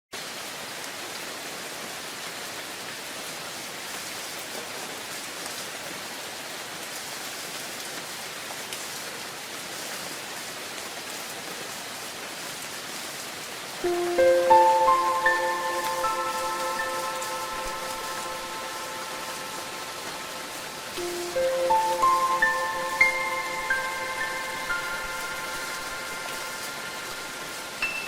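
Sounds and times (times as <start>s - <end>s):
steady rain falling: 0.2s - 28.0s
ringing chime notes: 13.8s - 28.0s.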